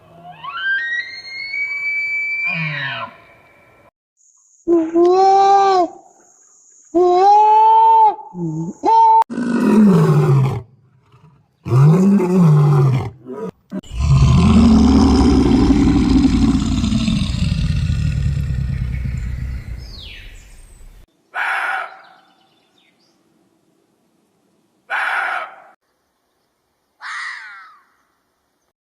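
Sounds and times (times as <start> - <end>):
long low animal roar: 9.3 - 20.5.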